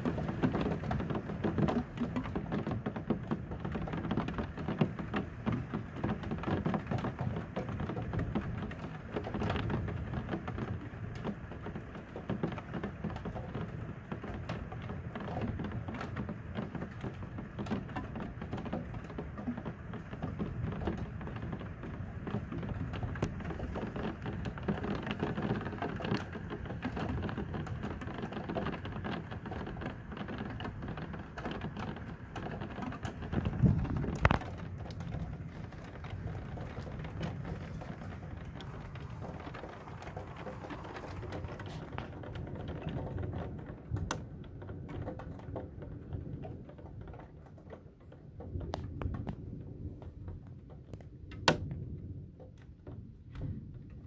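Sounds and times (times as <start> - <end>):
heavy rain pattering: 0.0 - 54.0.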